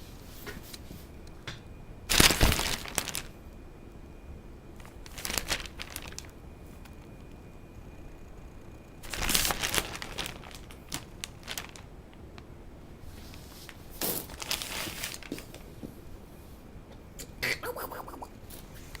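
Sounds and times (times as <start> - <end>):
basket crinkling and rustling: 2.1 - 3.3, 4.8 - 7.1, 9.0 - 12.2, 13.1 - 15.7.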